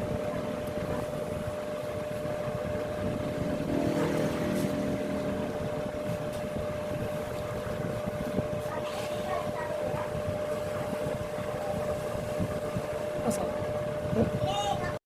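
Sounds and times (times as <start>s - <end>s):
motorcycle engine running: 0.0s - 8.7s
thin steady whine: 0.0s - 15.0s.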